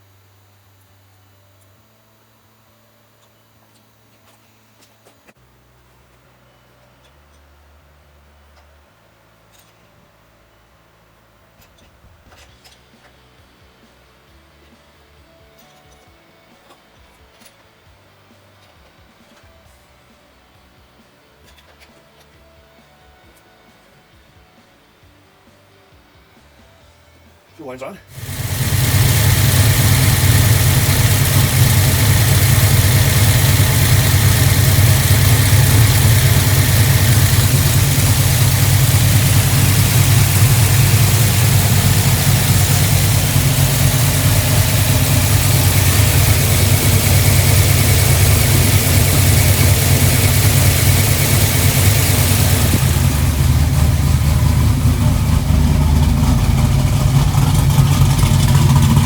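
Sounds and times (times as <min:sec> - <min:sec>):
high hiss: 0:28.1 - 0:57.8
car engine idling: 0:28.1 - 0:59.0.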